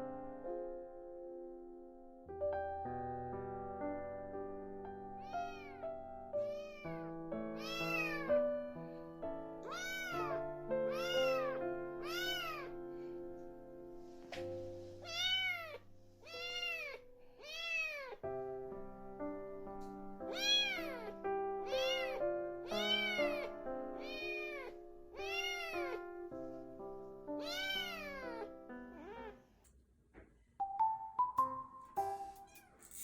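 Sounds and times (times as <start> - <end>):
soft background music: 0.0 - 29.6, 30.6 - 33.0
kitten meowing: 5.2 - 5.8, 6.4 - 7.0, 7.6 - 8.4, 9.6 - 12.8, 15.0 - 18.2, 20.3 - 26.0, 27.4 - 29.4.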